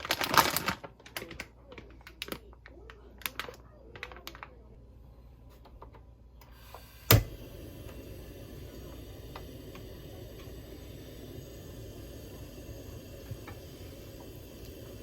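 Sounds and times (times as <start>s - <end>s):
gas stove hissing: 5.4s - 15.0s
igniter click: 6.4s - 8.0s.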